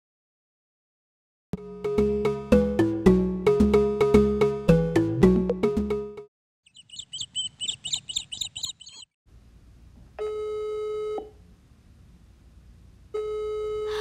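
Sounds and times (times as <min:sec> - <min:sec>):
rapid high chirps: 0:06.6 - 0:09.1.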